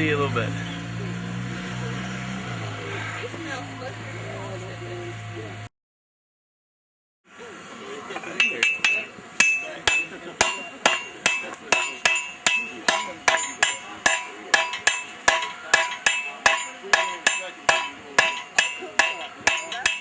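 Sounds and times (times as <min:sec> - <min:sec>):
hammer striking steel on anvil: 0:08.2 - 0:20.0.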